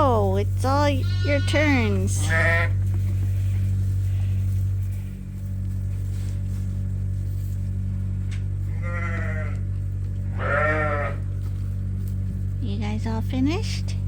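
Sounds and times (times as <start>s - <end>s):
steady low hum: 0.0s - 14.0s
lambs bleating: 0.8s - 2.9s, 8.6s - 11.6s.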